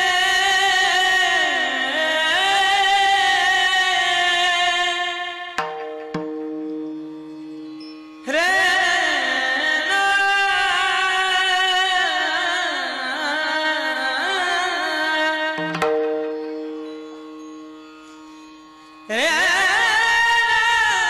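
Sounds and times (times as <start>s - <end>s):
man singing devotional melody: 0.0s - 5.7s, 8.2s - 17.2s, 19.0s - 21.0s.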